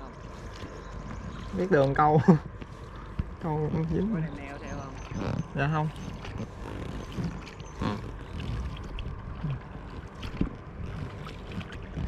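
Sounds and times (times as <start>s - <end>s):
small boat moving on river: 0.0s - 12.0s
water noise: 0.0s - 12.0s
wind on microphone: 2.6s - 12.0s.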